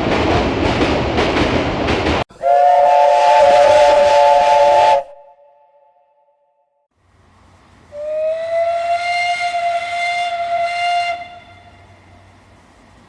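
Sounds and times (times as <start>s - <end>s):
train whistle blast: 2.3s - 6.6s, 7.9s - 12.2s
steady hiss: 7.0s - 13.0s.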